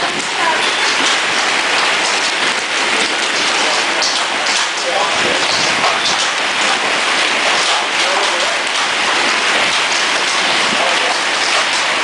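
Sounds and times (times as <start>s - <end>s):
heavy rain and hail pelting: 0.0s - 12.0s.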